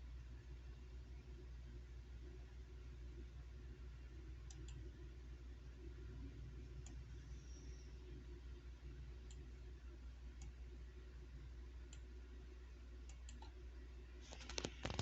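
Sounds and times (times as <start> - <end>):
steady low hum: 0.0 - 15.0
faint clicks: 4.4 - 4.9.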